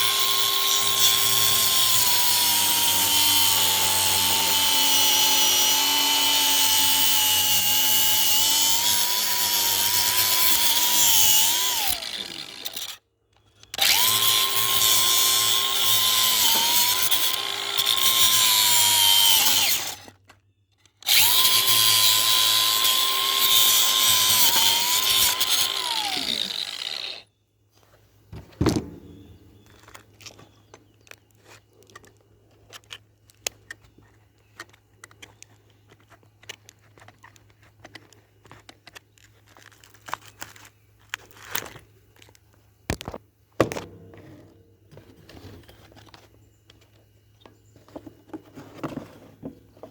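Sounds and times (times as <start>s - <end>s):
power tool motor running: 0.0s - 13.0s, 13.7s - 20.1s, 21.0s - 27.2s.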